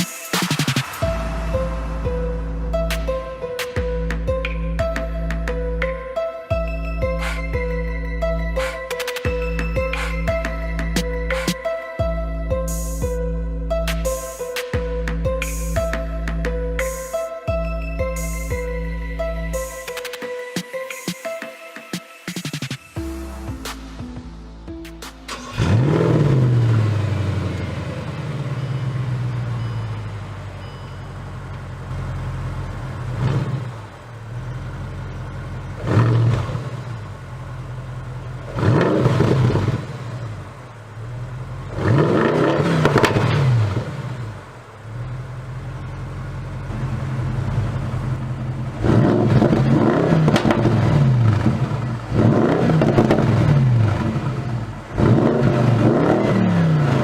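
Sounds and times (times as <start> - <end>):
car engine revving: 0.0 - 5.6, 23.0 - 30.6, 31.3 - 57.0.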